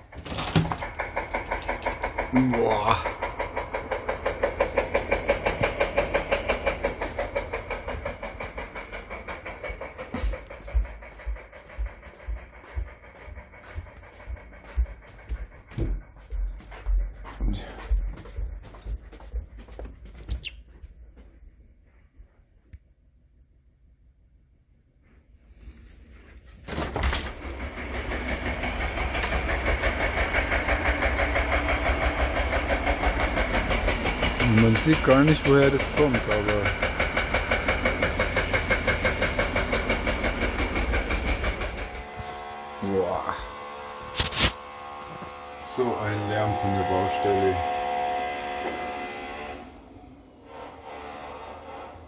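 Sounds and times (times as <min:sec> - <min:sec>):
construction machinery running: 0:00.0 - 0:22.4, 0:25.5 - 0:52.0
constant high whine: 0:00.0 - 0:24.6, 0:25.6 - 0:50.6
low rumble: 0:00.8 - 0:20.0.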